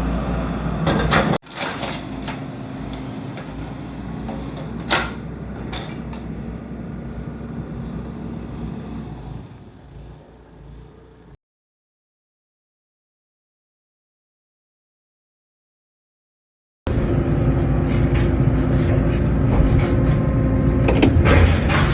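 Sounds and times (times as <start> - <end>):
excavator diesel engine running: 0.0 - 11.3, 16.9 - 21.9
sharp knocks and clanks: 0.8 - 3.6, 4.2 - 6.3, 17.5 - 21.9.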